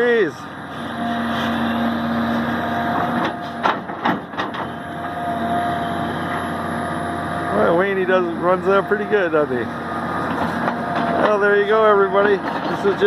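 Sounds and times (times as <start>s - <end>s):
excavator diesel engine running: 0.0s - 13.0s
sharp knocks: 3.1s - 4.7s.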